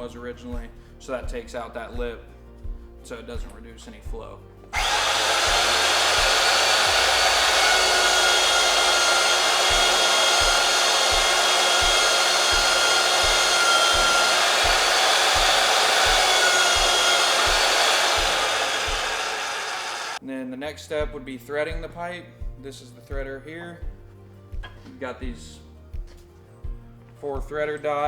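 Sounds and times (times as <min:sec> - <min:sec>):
pipe threading machine motor whining: 0:04.7 - 0:20.2.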